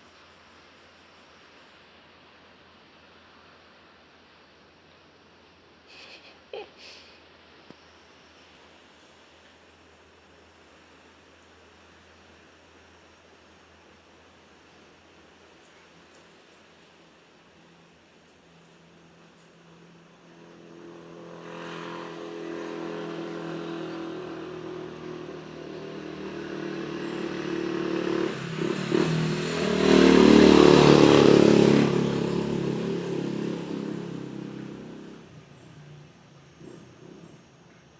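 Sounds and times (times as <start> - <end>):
vehicle engine passing: 18.8 - 37.8.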